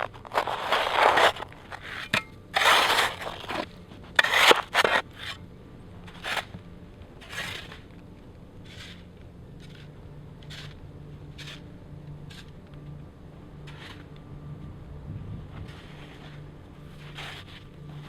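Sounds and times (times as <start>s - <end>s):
snow crunching and scraping: 0.0s - 5.4s, 7.2s - 7.9s, 15.6s - 18.0s.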